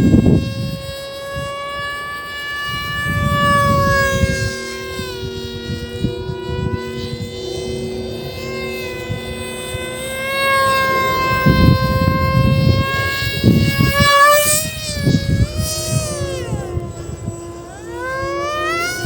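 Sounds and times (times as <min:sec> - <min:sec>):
motor spinning propeller whine: 0:00.0 - 0:19.0.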